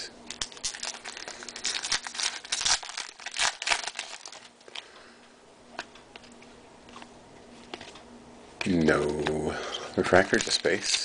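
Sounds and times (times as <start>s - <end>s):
plastic wrapper crinkling: 0.3s - 4.9s, 10.0s - 11.0s.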